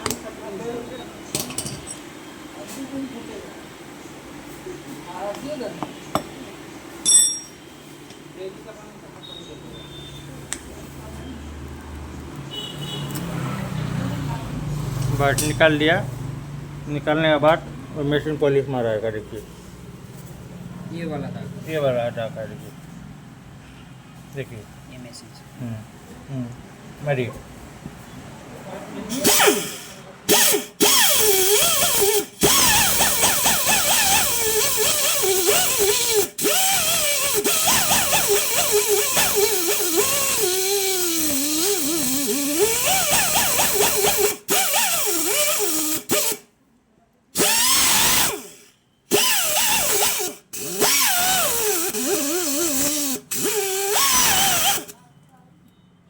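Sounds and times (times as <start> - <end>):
power buffer whining on rubber: 29.3 - 46.4, 47.4 - 54.9.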